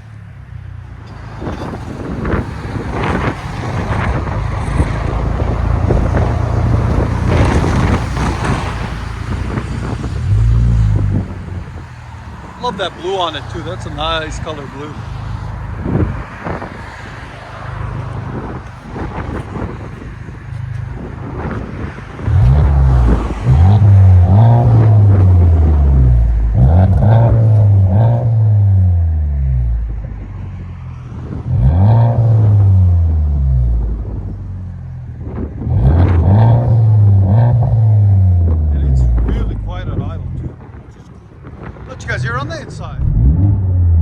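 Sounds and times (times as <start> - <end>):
car engine idling: 0.0 - 30.6
car engine revving: 1.1 - 40.8, 41.7 - 44.0.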